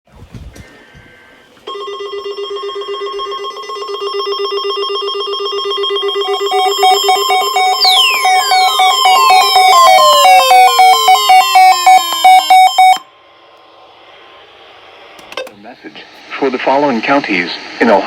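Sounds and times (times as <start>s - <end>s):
pulsing electronic alert tone: 4.3s - 13.0s
higher pulsing tone: 6.1s - 13.0s
falling electronic sweep: 6.4s - 12.5s.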